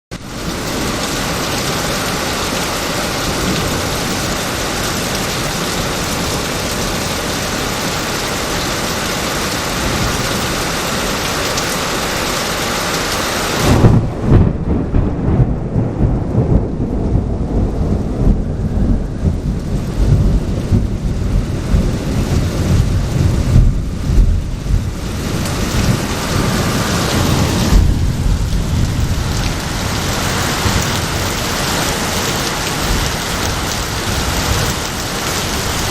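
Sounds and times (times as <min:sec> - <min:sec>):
heavy rain hissing: 0:00.1 - 0:35.9
thunderclap rolling into rumble: 0:13.6 - 0:35.9.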